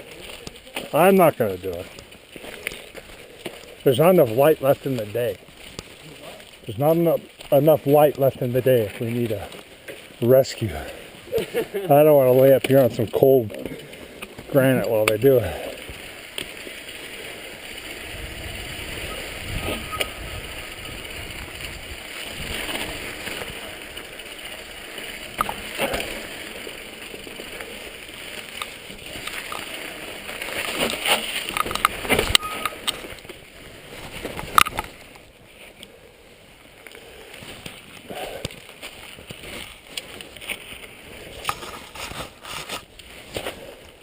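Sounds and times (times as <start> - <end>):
bike tyres on rocky trail: 0.0 - 44.0
wind on microphone: 18.0 - 22.6.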